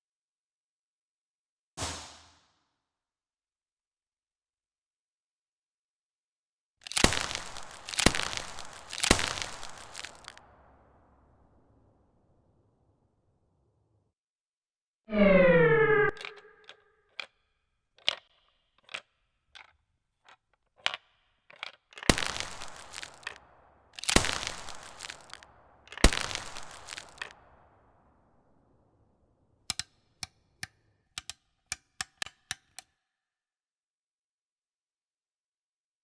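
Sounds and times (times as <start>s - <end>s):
short sharp cracks: 6.8s - 10.9s, 18.0s - 28.0s
loud gunshots with long tail: 7.0s - 11.4s, 22.1s - 28.2s
short falling tone: 15.1s - 16.6s.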